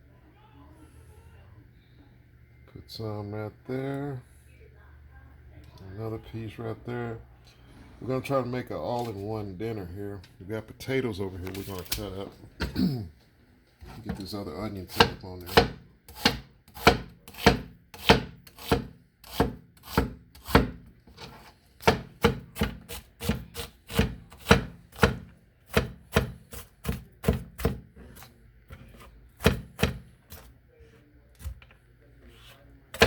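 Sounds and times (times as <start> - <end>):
knife chopping on cutting board: 14.9 - 30.5.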